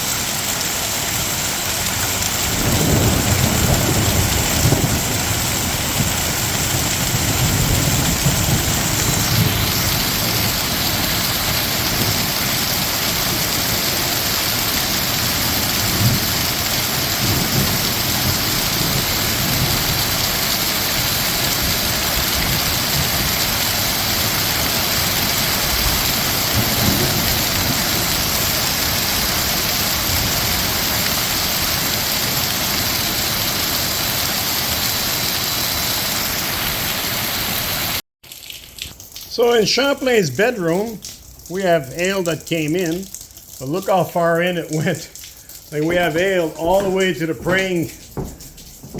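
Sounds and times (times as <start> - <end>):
heavy rain pelting: 0.0 - 48.9
low thunder rumbles: 2.0 - 12.4, 24.8 - 32.0, 45.0 - 48.9.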